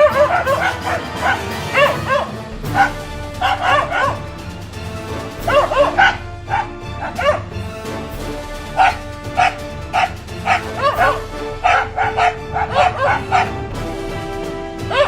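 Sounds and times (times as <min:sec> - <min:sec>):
dog barking: 0:00.0 - 0:04.3, 0:05.5 - 0:07.4, 0:08.8 - 0:13.6
background music: 0:00.0 - 0:15.0.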